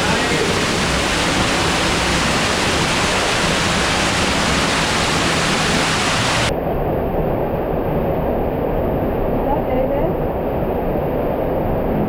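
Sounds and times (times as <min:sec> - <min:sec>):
waterfall roaring in a cave: 0:00.0 - 0:06.5.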